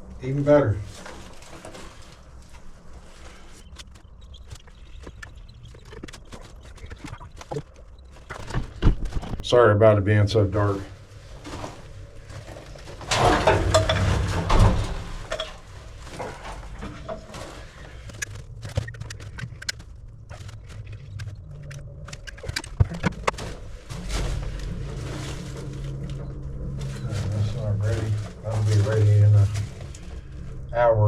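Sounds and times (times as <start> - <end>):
low steady hum: 0.0 - 31.0
caulking gun scraping and rustling: 0.8 - 4.4
sharp clicks and knocks: 12.4 - 24.5.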